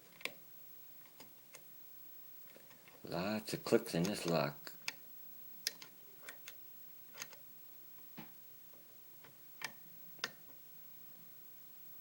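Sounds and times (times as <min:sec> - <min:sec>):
lock pick clicking pins: 0:05.6 - 0:07.4.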